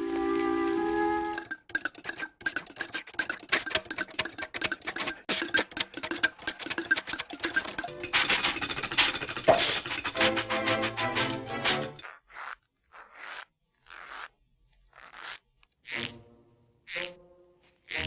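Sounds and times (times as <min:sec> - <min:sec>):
cartoon mechanical clatter: 0:01.4 - 0:11.1
clattering with pitched tone: 0:01.4 - 0:11.5.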